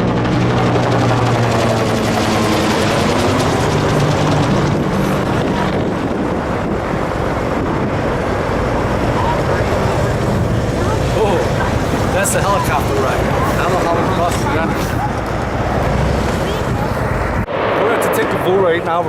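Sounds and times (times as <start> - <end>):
helicopter rotor drone: 0.0 - 19.0.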